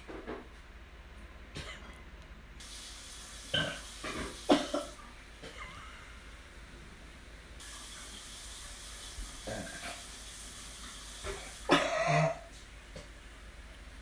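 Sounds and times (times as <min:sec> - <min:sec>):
water running into a sink: 0:02.6 - 0:14.0
person retching: 0:03.5 - 0:05.7, 0:11.7 - 0:12.5.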